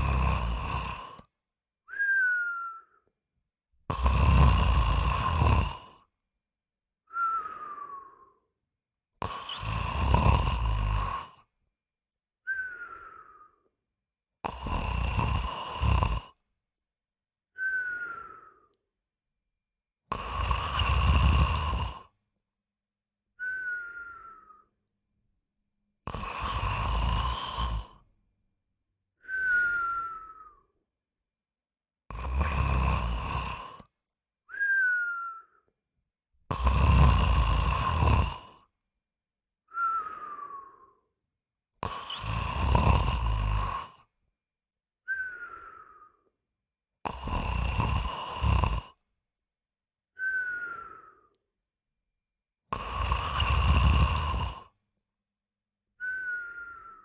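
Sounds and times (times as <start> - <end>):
person snoring: 0.0 - 1.3, 3.9 - 6.1, 9.2 - 11.5, 14.4 - 16.4, 20.1 - 22.1, 26.0 - 28.0, 32.1 - 33.9, 36.5 - 38.7, 41.8 - 44.1, 47.1 - 49.0, 52.7 - 54.8
whistling breath: 1.9 - 3.2, 7.0 - 8.6, 12.4 - 13.8, 17.5 - 18.9, 23.3 - 25.0, 29.2 - 31.0, 34.5 - 35.9, 39.6 - 41.2, 41.9 - 42.7, 45.0 - 46.4, 50.1 - 51.6, 55.9 - 57.0.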